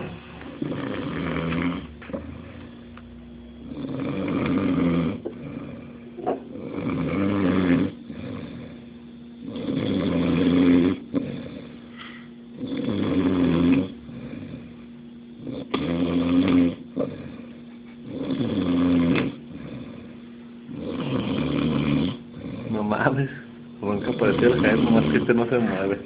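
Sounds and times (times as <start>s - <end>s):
person snoring: 0.0s - 2.6s, 3.6s - 14.8s, 15.4s - 23.0s, 23.9s - 26.0s
quiet breaths: 11.2s - 12.5s.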